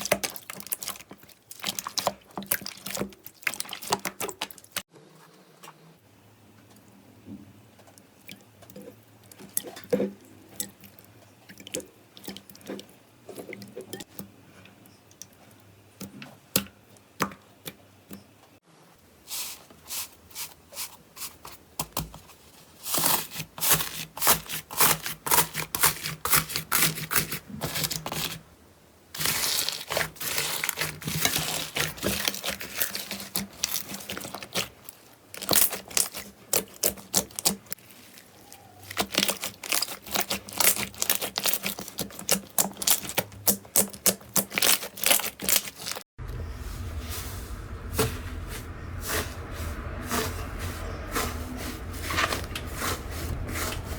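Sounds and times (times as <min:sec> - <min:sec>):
slime crackling and popping: 0:38.8 - 0:46.0.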